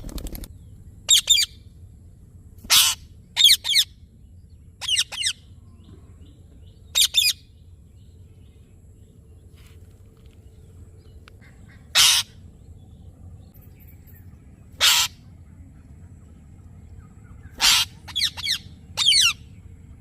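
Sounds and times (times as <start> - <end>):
low steady hum: 0.0 - 20.0
parrot shrill calls: 2.7 - 3.9, 4.8 - 5.4, 11.9 - 12.4, 14.8 - 15.2, 17.5 - 19.4.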